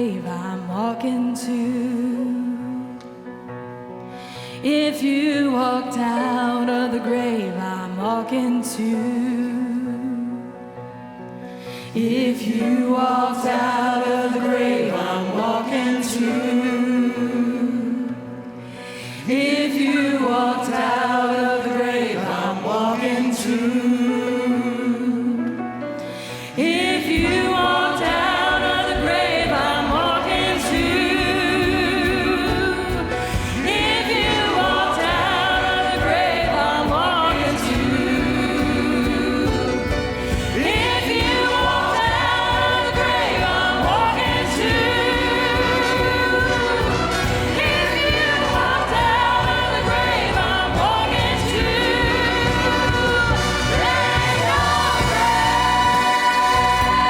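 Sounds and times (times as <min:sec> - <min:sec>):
choir singing gospel song: 0:00.0 - 0:03.0, 0:04.4 - 0:10.4, 0:11.7 - 0:57.0
orchestra accompaniment: 0:27.2 - 0:57.0.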